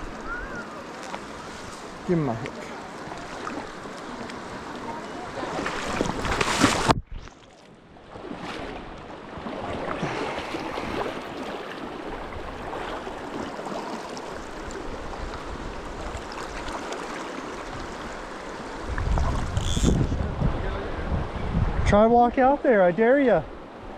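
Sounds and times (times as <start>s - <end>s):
river flowing: 0.0s - 19.9s
wind buffeting microphone: 18.8s - 22.3s.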